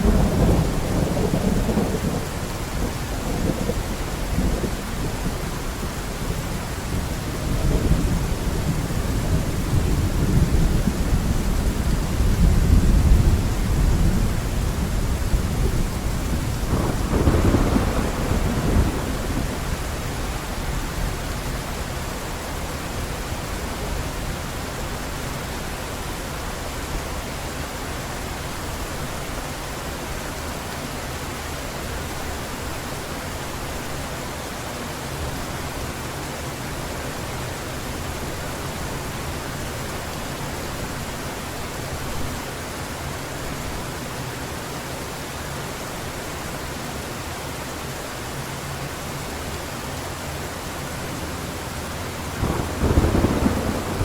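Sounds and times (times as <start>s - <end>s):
heavy rain falling: 0.0s - 54.0s
rolling thunder: 6.9s - 20.0s, 52.3s - 54.0s.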